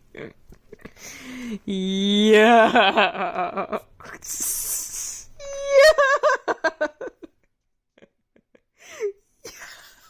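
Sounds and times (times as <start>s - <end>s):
person laughing: 1.6s - 3.9s, 5.4s - 8.6s.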